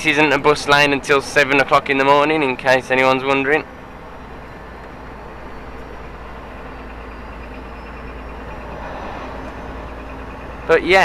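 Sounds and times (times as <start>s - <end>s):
truck engine drone in cab: 0.0s - 11.0s
faint rising whistle: 4.5s - 10.9s.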